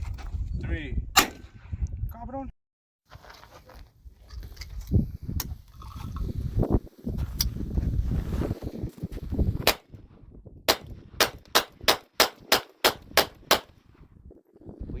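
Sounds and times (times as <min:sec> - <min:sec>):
gunshots: 0:01.2 - 0:01.6, 0:10.7 - 0:13.8.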